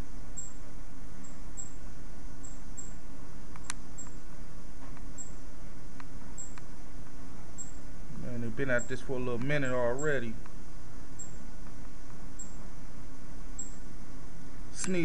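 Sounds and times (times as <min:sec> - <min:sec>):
steady low hum: 0:00.0 - 0:15.0
high-pitched insect chirps: 0:00.4 - 0:00.6, 0:01.2 - 0:01.8, 0:02.4 - 0:03.0, 0:05.2 - 0:05.4, 0:06.4 - 0:06.6, 0:07.6 - 0:07.8, 0:11.2 - 0:11.4, 0:12.4 - 0:12.6, 0:13.6 - 0:13.8
sharp click: 0:02.8 - 0:04.2.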